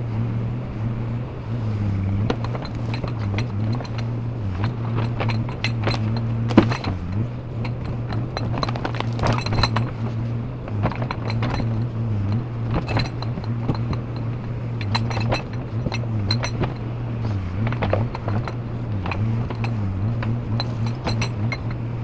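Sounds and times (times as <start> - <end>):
diesel engine under load: 0.0 - 22.0
metallic clinks and knocks: 2.2 - 22.0.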